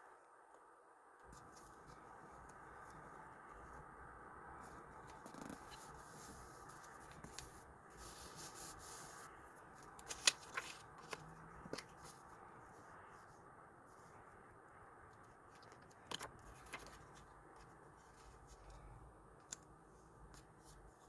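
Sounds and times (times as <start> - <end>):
paper rustling: 4.6 - 12.3, 15.6 - 18.9.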